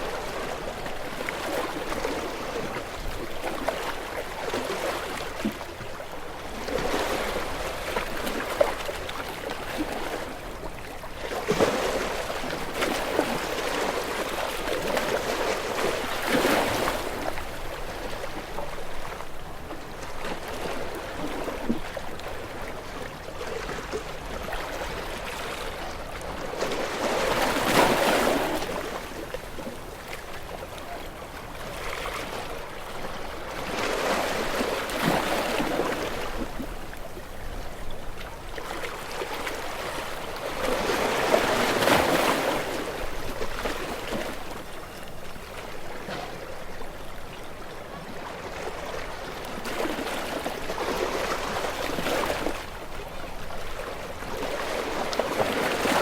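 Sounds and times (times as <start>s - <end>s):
sea waves breaking on rocks: 11.2s - 18.6s, 24.0s - 46.6s, 48.2s - 56.0s.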